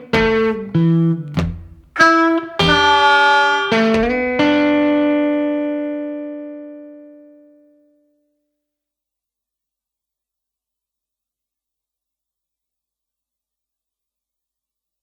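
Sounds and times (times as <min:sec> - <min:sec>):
blues guitar chords: 0:00.0 - 0:07.8.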